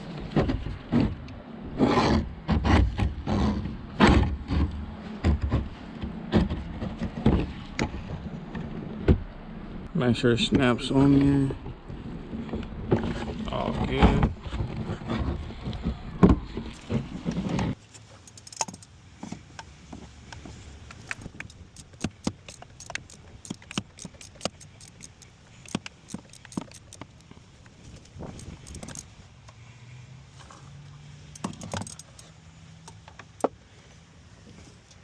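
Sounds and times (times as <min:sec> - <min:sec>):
loud handling rustle: 0:16.7 - 0:35.0
metallic clicks of tools: 0:18.1 - 0:18.9, 0:20.9 - 0:29.2, 0:31.2 - 0:33.5.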